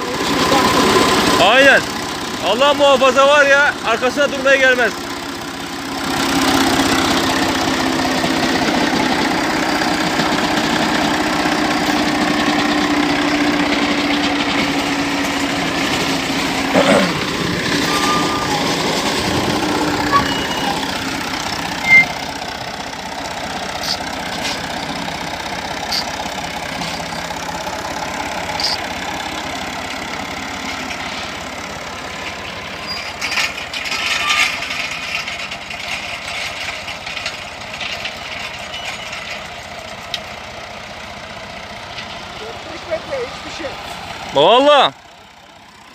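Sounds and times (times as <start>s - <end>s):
mowing machine engine hum: 0.0s - 2.8s, 3.6s - 33.9s.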